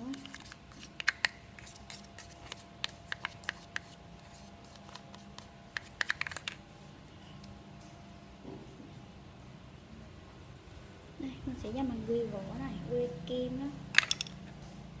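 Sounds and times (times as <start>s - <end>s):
small hard objects clicking: 14.0s - 14.4s.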